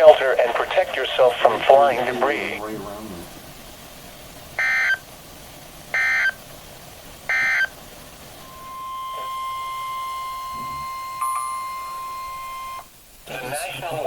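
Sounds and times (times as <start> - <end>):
digital data tone bursts: 4.6 - 5.0, 5.9 - 6.4, 7.3 - 7.8, 8.4 - 12.9
steady beep-like tone: 8.4 - 12.9.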